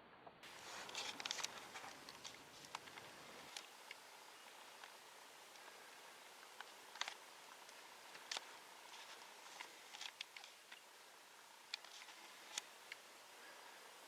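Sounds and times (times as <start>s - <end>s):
faint sharp clicks: 0.8s - 5.7s, 6.4s - 10.9s.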